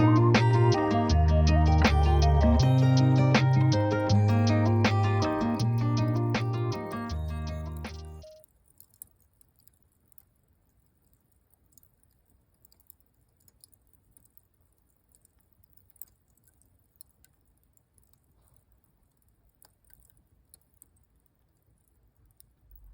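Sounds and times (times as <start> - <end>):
faint crackling clicks: 5.2 - 22.9.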